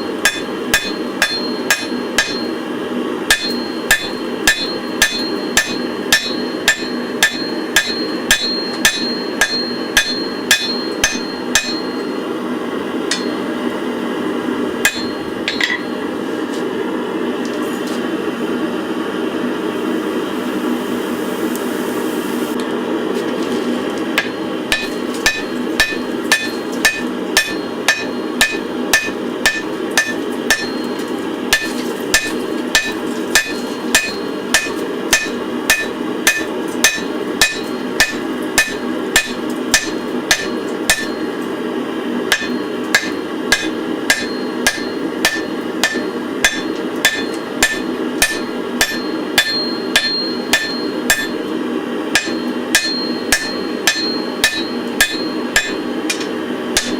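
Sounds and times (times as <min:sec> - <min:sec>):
hammer ringing on anvil: 0:00.0 - 0:02.6, 0:03.3 - 0:12.2, 0:13.1 - 0:13.5, 0:14.8 - 0:15.9, 0:24.2 - 0:41.4, 0:42.3 - 0:51.5, 0:52.1 - 0:56.9.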